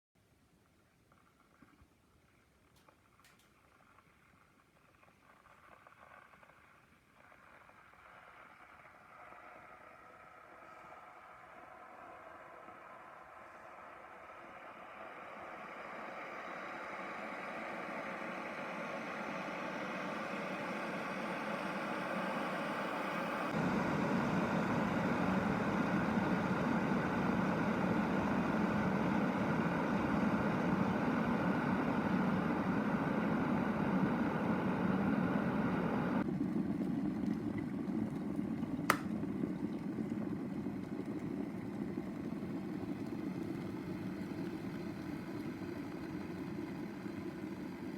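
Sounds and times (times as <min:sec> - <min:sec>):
kettle heating water: 0:02.7 - 0:03.9, 0:07.2 - 0:47.9
kettle switch click: 0:38.9 - 0:39.1.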